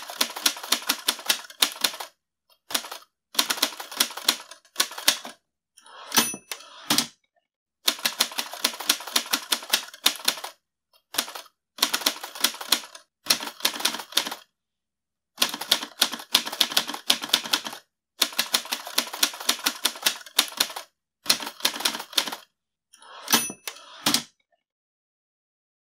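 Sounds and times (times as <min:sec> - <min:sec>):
typewriter keystrokes: 0:02.7 - 0:05.4, 0:07.9 - 0:10.6, 0:11.2 - 0:14.4, 0:15.4 - 0:22.4
typewriter bell ring: 0:06.1 - 0:06.7, 0:23.2 - 0:24.0.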